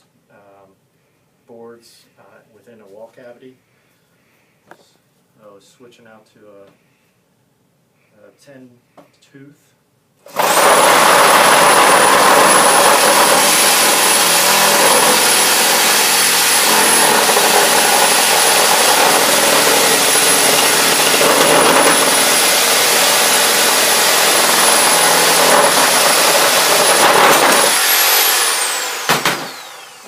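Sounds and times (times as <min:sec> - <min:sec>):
reciprocating saw cutting wood: 0:10.3 - 0:30.0.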